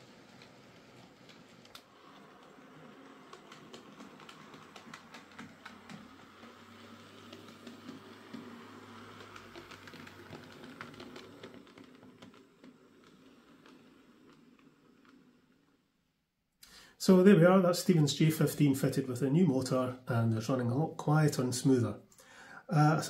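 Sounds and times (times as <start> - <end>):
model train motor hum: 0.0 - 16.2
light uneven clicks: 0.3 - 15.2.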